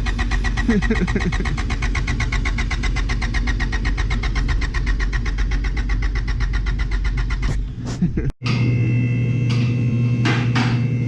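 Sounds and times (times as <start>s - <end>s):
car engine pulsing rumble: 0.0s - 8.2s.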